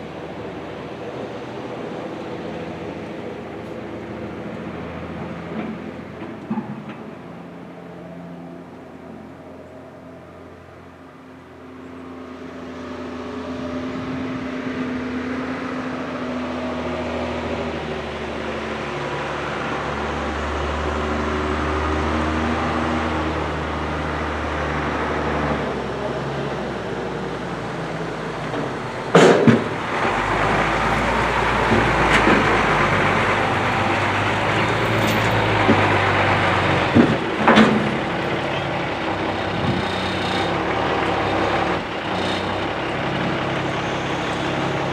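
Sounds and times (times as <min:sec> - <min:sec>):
farm vehicle engine running: 0:00.0 - 0:44.9
sharp knocks: 0:29.1 - 0:35.9.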